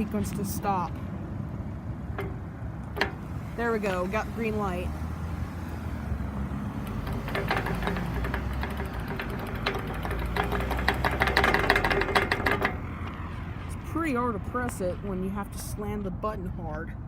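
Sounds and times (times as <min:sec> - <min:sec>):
vehicle engines running: 0:00.0 - 0:17.0
rapid clicking: 0:06.8 - 0:13.2.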